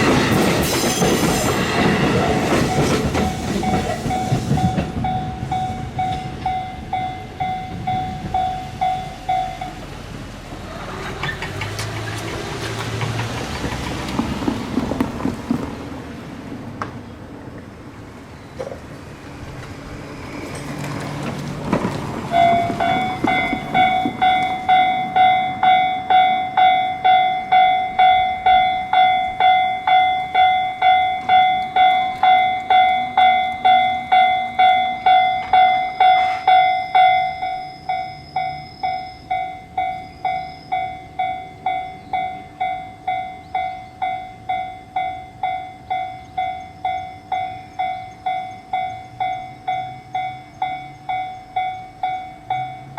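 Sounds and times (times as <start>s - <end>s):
level crossing bell clanging: 0.0s - 9.9s, 22.3s - 52.9s.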